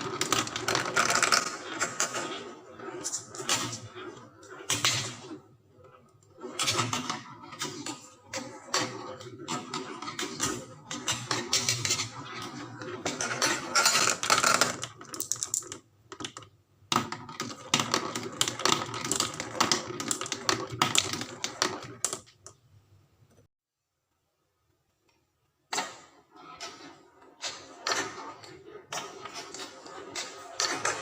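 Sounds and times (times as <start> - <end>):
marbles clattering down track: 13.0 - 16.4.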